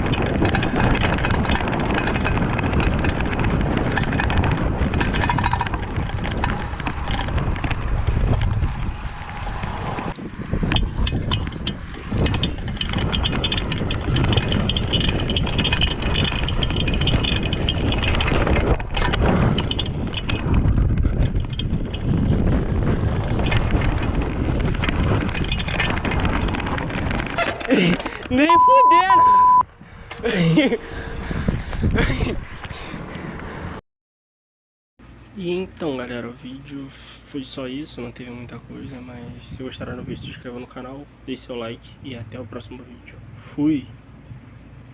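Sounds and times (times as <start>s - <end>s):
bike clattering and rattling: 0.0s - 28.6s
bike tyre noise: 0.0s - 33.8s
wind rushing on microphone: 0.0s - 33.8s, 38.2s - 42.6s.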